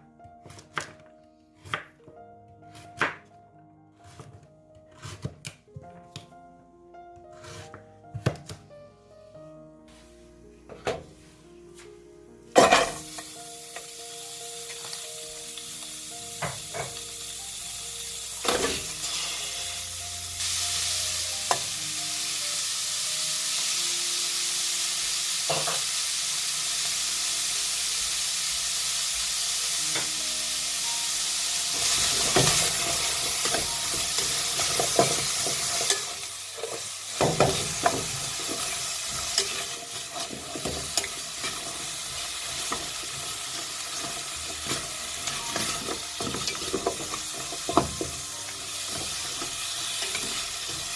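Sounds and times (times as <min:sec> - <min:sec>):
faint background music: 0:00.0 - 0:50.9
food sizzling in a pan: 0:12.6 - 0:50.9.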